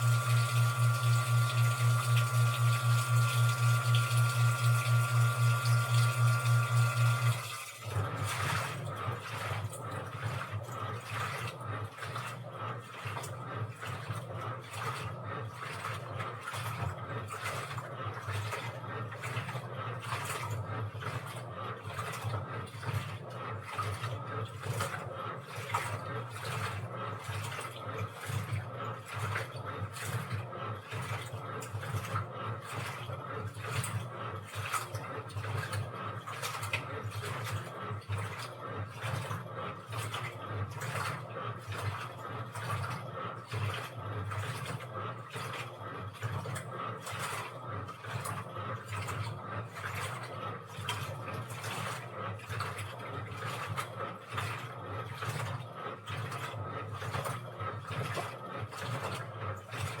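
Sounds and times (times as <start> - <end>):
washing machine motor hum: 0.0 - 60.0.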